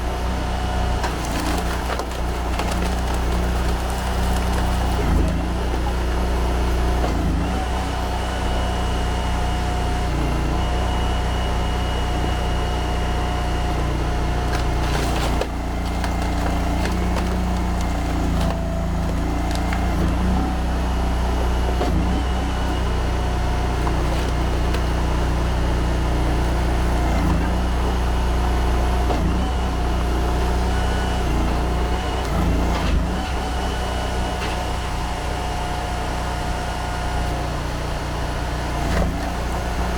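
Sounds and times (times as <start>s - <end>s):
hydraulic whine: 0.0s - 39.9s
log splitter engine running: 0.0s - 39.9s
logs cracking as they split: 1.0s - 6.0s, 14.2s - 22.8s.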